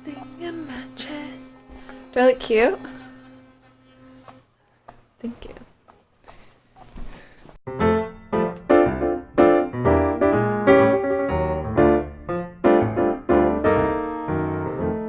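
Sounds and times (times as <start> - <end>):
piano music: 7.7 - 15.0.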